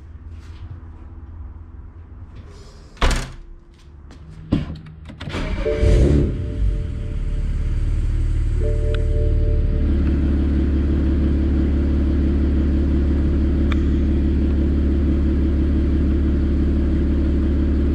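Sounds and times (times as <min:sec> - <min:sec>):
car engine idling: 0:04.9 - 0:17.9.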